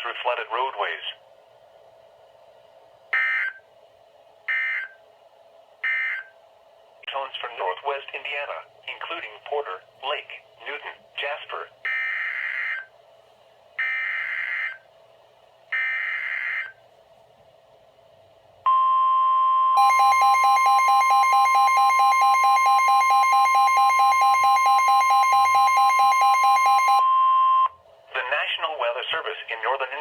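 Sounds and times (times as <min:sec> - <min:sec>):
steady warning alarm tone: 0:03.2 - 0:03.6, 0:04.5 - 0:05.0, 0:05.8 - 0:06.3, 0:11.9 - 0:12.9, 0:13.8 - 0:14.8, 0:15.7 - 0:16.8, 0:18.7 - 0:27.7
rapid pulsing alert beeps: 0:19.8 - 0:27.7.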